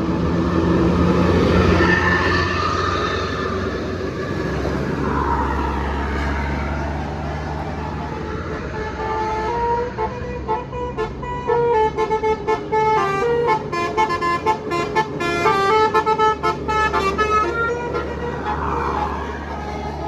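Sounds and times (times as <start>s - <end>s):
low engine rumble: 0.0s - 9.8s, 15.5s - 20.0s.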